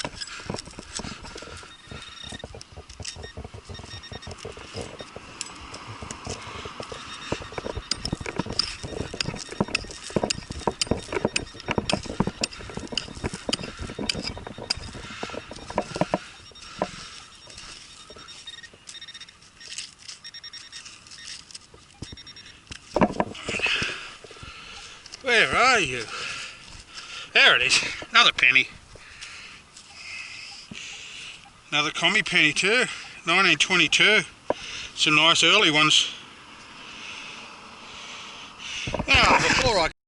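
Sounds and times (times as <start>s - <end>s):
digging tool scraping stony soil: 0.0s - 22.2s
faint short beeps: 1.2s - 5.2s, 6.0s - 22.6s.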